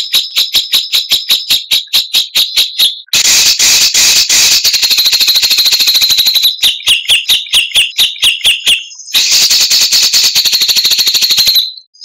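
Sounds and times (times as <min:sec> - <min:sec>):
songbird trilling: 0:04.6 - 0:12.0.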